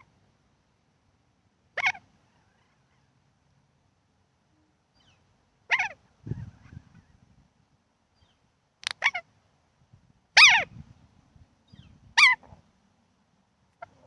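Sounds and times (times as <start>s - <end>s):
pet animal high-pitched cries: 1.8s - 3.1s, 5.7s - 6.0s, 10.4s - 10.7s, 12.2s - 12.4s.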